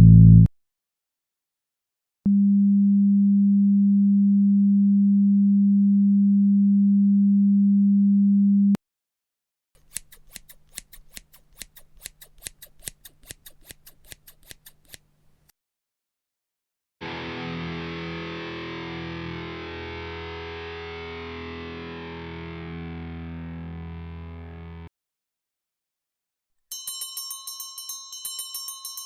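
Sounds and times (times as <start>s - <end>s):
low electronic tone: 0.0s - 0.5s, 2.3s - 8.8s.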